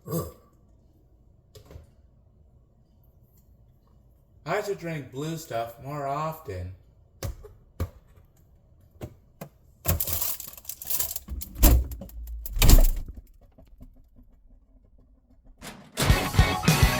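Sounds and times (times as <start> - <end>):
rustling and scraping: 9.9 - 14.4
heavy thumps: 10.0 - 14.0.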